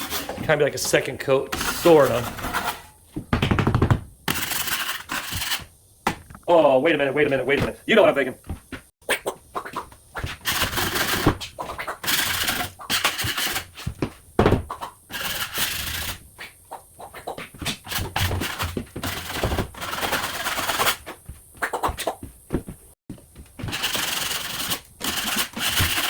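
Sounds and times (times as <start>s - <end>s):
drywall knife scraping: 1.5s - 3.0s, 4.3s - 5.7s.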